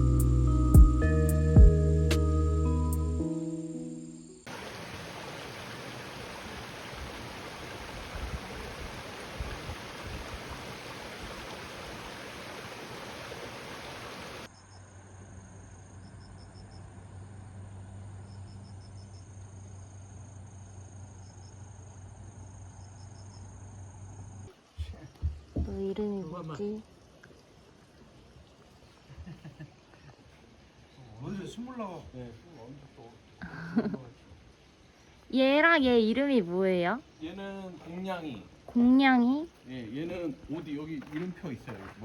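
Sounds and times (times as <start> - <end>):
insect chirping: 2.8 - 41.9
stream water rushing: 4.5 - 14.5.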